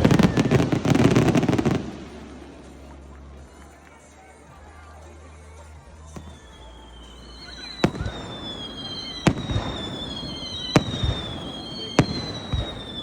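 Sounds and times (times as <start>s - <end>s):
firework whistles gliding down: 0.0s - 2.8s, 6.2s - 13.0s
firework shells bursting: 6.2s - 13.0s.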